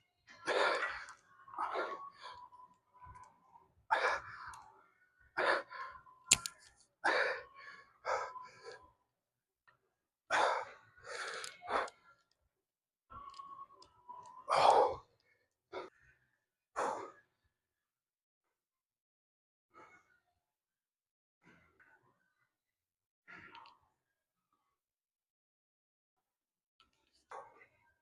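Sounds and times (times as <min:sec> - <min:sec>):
sharp click: 0:06.3 - 0:06.6.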